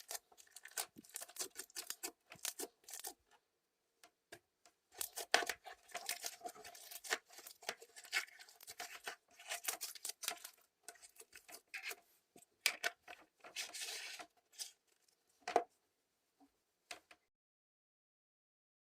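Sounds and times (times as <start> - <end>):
slime squelching and popping: 0.0 - 3.2.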